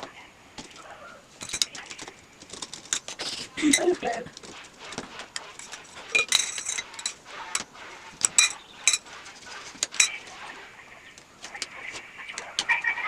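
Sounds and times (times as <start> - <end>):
metal parts clinking together: 1.4 - 3.1, 6.2 - 7.2, 8.2 - 9.0.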